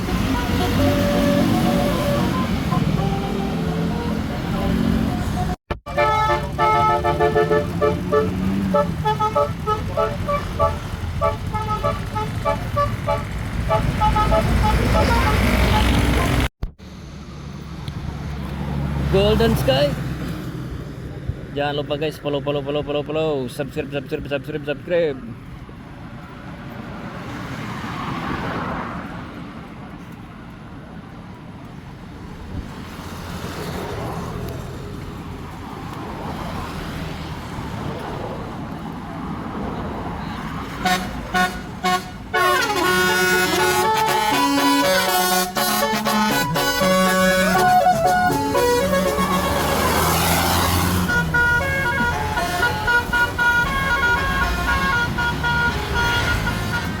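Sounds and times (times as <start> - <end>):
multi-tone bus air horn tune: 0.0 - 4.5, 5.9 - 15.8, 40.8 - 57.0
large vehicle engine rumbling: 0.0 - 27.0, 29.6 - 57.0
road traffic: 0.0 - 57.0.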